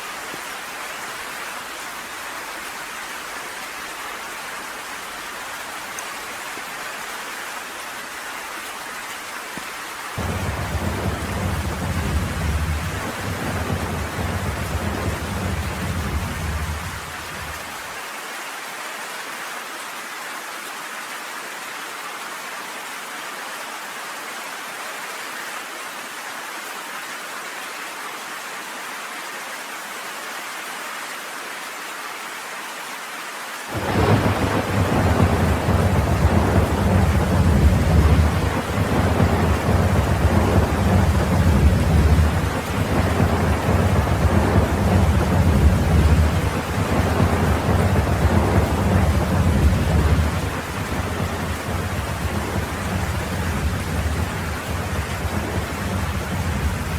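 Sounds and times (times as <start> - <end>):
steady rain falling: 0.0 - 56.9
rolling thunder rumble: 10.2 - 17.8, 33.7 - 56.9.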